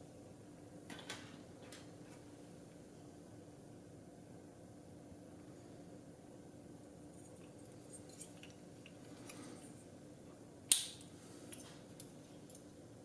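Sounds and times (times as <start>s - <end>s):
low steady hum: 0.0s - 13.0s
sharp snap: 10.7s - 11.1s.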